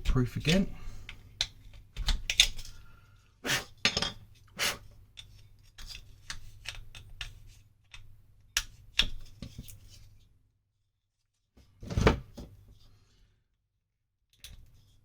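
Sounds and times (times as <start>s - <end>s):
hand scraping and rubbing strokes: 3.4s - 3.8s, 4.4s - 4.9s.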